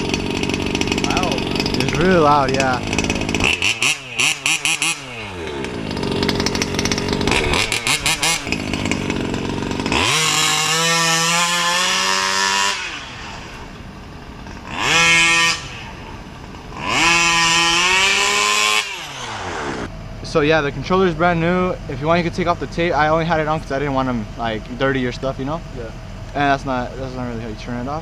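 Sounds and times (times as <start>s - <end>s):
small two-stroke engine revving: 0.0s - 19.9s.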